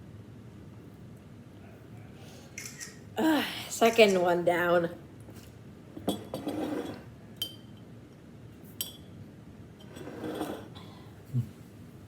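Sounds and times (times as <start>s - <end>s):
glass clinking on hard surface: 6.0s - 7.8s, 8.8s - 9.1s.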